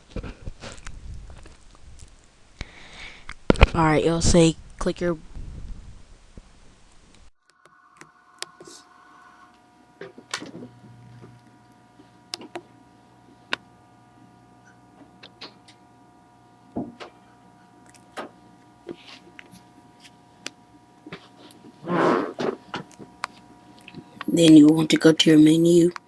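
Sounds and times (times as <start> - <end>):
faint high whine: 7.3 - 26.0.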